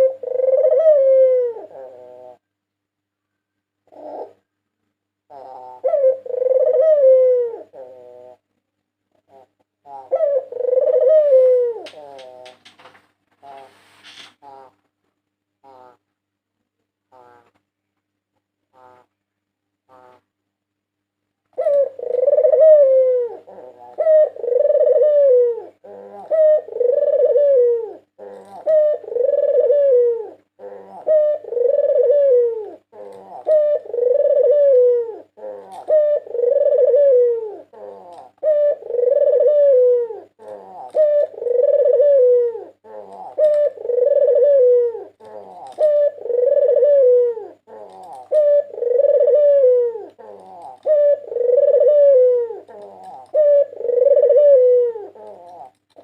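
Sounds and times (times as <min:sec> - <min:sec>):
dove cooing: 0:00.0 - 0:02.5, 0:03.8 - 0:04.6, 0:05.2 - 0:08.5, 0:09.1 - 0:14.8, 0:15.6 - 0:16.0, 0:17.1 - 0:17.6, 0:21.5 - 0:56.0.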